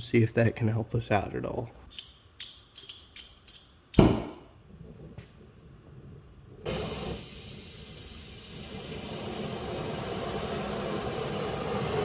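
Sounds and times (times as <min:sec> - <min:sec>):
gas torch hissing: 0:06.7 - 0:12.0.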